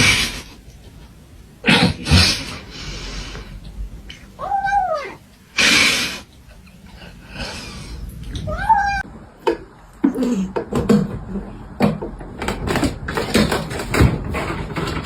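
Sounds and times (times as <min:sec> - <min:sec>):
cat meowing: 0:04.4 - 0:05.2, 0:08.3 - 0:09.1.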